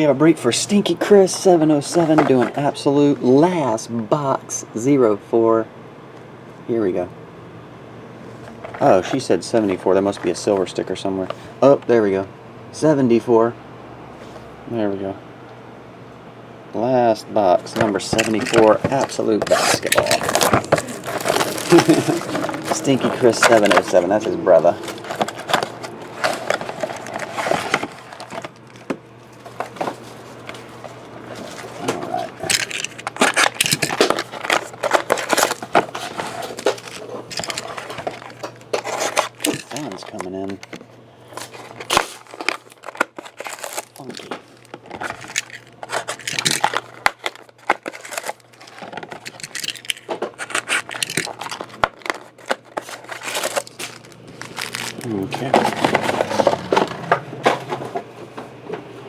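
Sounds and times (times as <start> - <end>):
cardboard and plastic packaging crinkling: 0.7 - 3.5, 8.5 - 11.5, 17.6 - 58.0.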